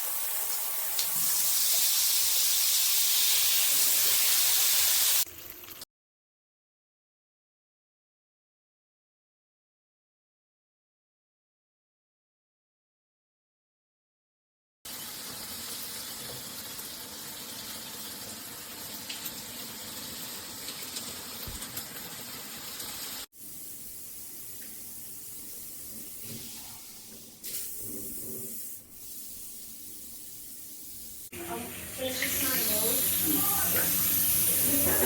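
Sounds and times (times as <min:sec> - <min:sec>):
shower water spraying: 0:00.0 - 0:05.8, 0:14.9 - 0:35.0.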